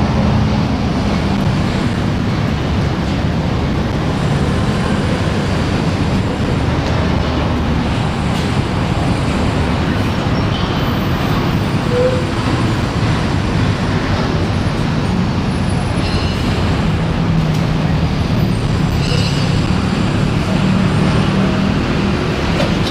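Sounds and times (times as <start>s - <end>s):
train wheels rumbling on rail: 0.0s - 22.9s
high wheel squeals: 10.2s - 12.7s.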